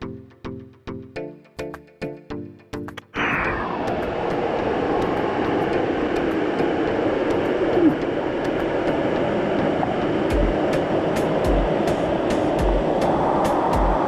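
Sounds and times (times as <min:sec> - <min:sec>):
waterfall roaring: 0:03.2 - 0:14.0
low beat: 0:03.6 - 0:14.0.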